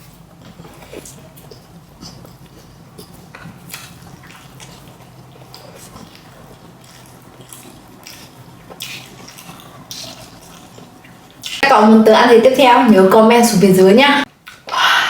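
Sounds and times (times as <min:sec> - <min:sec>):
person chewing food: 0:00.0 - 0:11.6.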